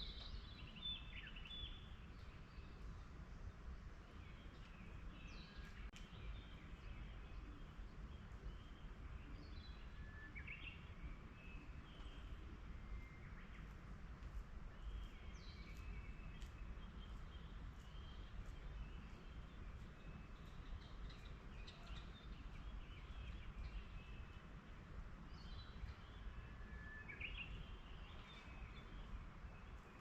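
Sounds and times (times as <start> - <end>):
forest birds chirping: 0.0 - 30.0.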